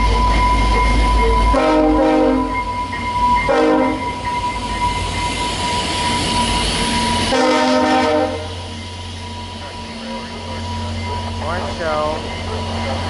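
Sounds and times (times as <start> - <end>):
train rumble: 0.0 - 13.0
train air horn blasts: 1.5 - 2.6, 3.5 - 4.1, 7.3 - 8.5.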